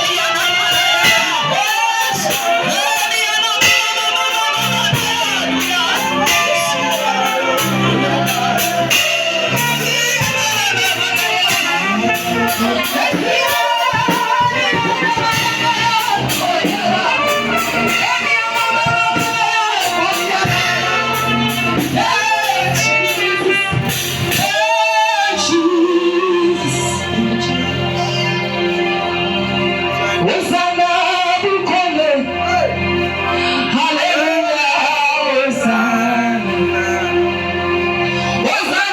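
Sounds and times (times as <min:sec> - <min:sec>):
gospel band playing: 0:00.0 - 0:38.9
woman singing: 0:09.5 - 0:23.8.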